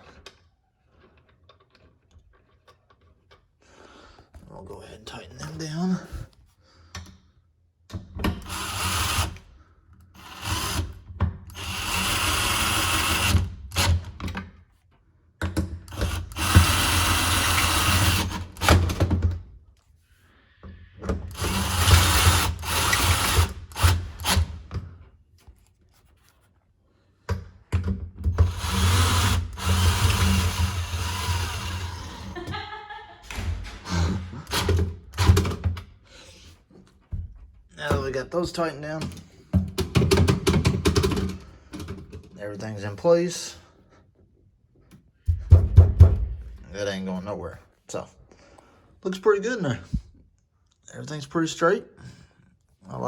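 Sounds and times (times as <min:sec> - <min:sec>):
power driver running bolts: 0:15.9 - 0:19.1, 0:21.2 - 0:24.7, 0:28.3 - 0:32.3, 0:34.4 - 0:35.6.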